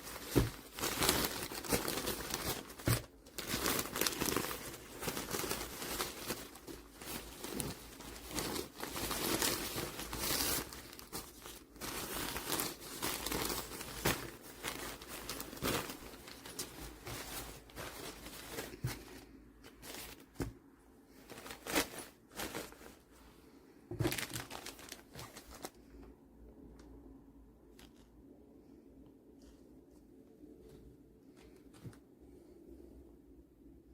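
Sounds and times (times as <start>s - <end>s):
plastic crinkling: 0.0s - 23.2s, 23.9s - 26.0s.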